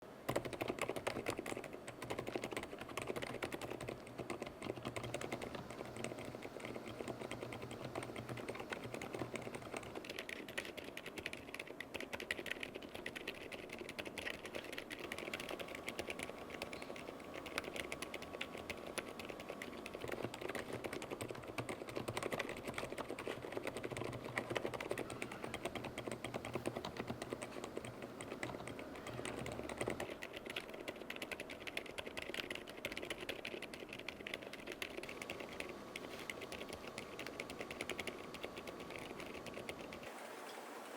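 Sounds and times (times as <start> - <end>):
soft muted keystrokes: 0.3 - 40.1.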